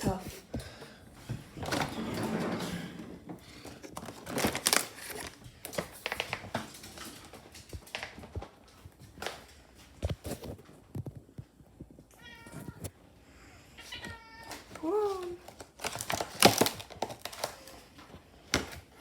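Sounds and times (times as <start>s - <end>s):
crinkly packet rustling: 3.7s - 9.6s, 14.0s - 18.8s.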